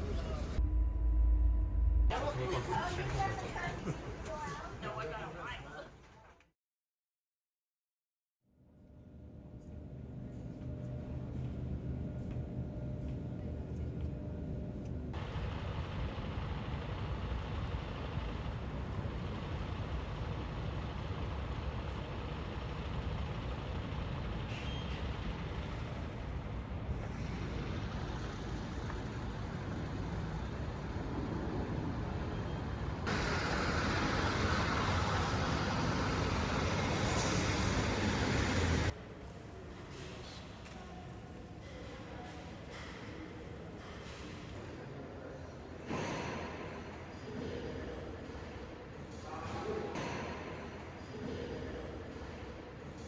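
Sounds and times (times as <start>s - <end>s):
heavy vehicle rumble and hiss: 0.0s - 0.6s, 15.2s - 39.0s.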